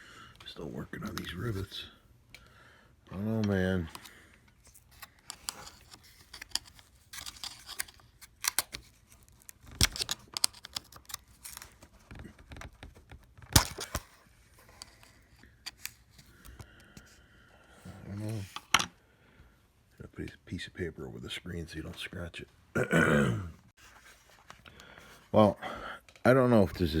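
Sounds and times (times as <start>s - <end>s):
hand tool clicking and scraping: 3.9s - 8.9s.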